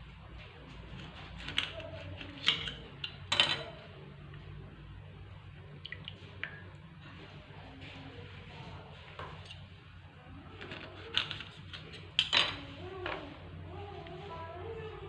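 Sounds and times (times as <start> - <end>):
low steady hum: 0.0 - 15.0
kitchenware clicking and knocking: 2.4 - 3.8, 10.6 - 12.6.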